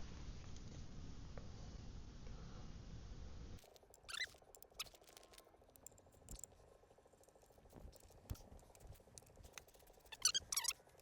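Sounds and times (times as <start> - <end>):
high squeaks: 4.0 - 5.4, 10.0 - 10.8.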